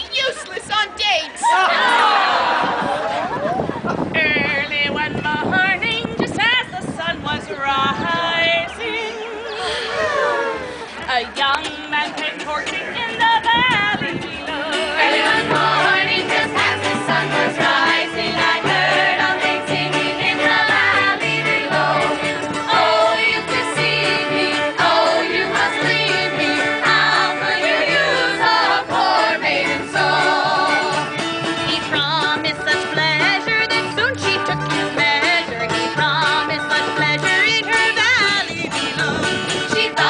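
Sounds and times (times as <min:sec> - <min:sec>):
voices singing together: 0:01.4 - 0:03.4, 0:11.6 - 0:40.0
instrumental accompaniment: 0:11.3 - 0:40.0.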